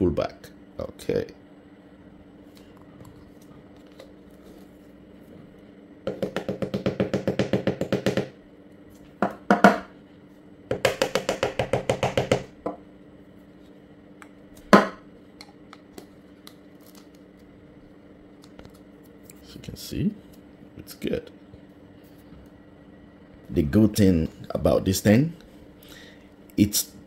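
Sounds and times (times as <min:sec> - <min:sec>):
sharp knocks: 0:06.1 - 0:08.3.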